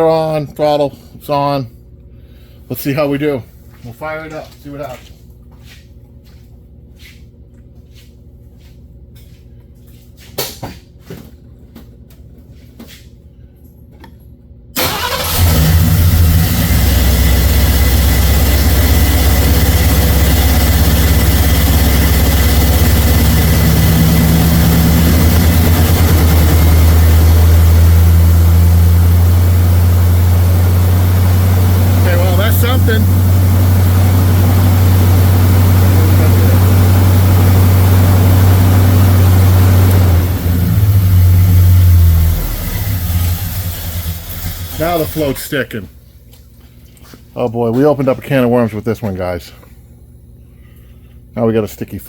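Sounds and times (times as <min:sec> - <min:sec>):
car engine starting and idling: 0:14.8 - 0:45.7.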